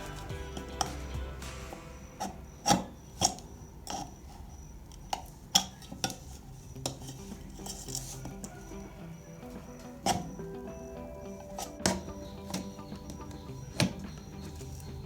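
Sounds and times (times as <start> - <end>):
scraping and rasping: 5.7 - 9.0.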